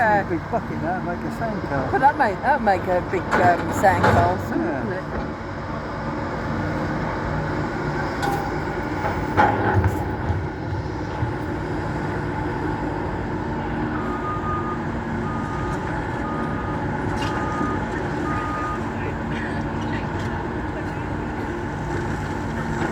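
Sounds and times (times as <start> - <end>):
excavator engines running: 0.0 - 22.9
reversing alarm beeping: 13.6 - 19.2.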